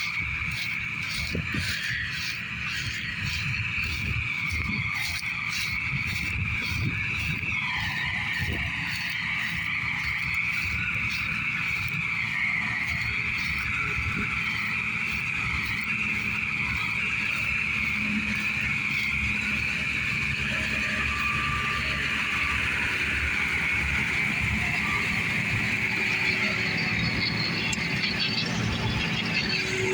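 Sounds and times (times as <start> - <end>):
high-pitched machine whine: 0.0 - 29.9
machinery engine rumble: 0.0 - 29.9.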